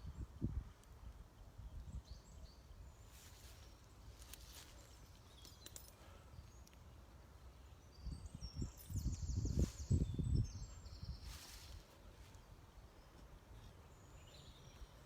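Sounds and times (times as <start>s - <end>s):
birds chirping and whistling: 7.6s - 11.8s.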